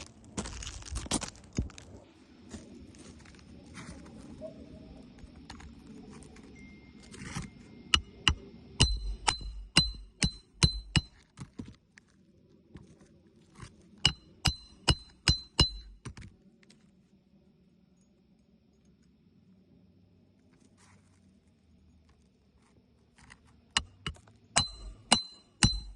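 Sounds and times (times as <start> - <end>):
hammer striking roofing nails: 8.0 - 11.2, 14.1 - 16.0, 23.8 - 25.9.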